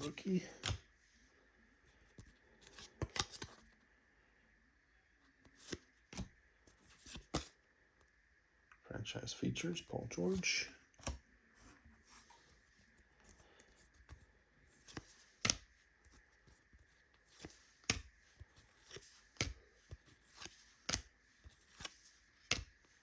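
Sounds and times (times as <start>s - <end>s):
trading cards rustling and ticking: 0.0s - 0.9s, 2.1s - 3.8s, 10.2s - 22.8s.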